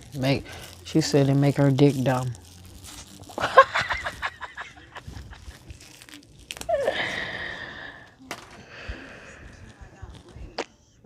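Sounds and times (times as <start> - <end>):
sandwich wrapper crinkling: 0.0 - 7.9.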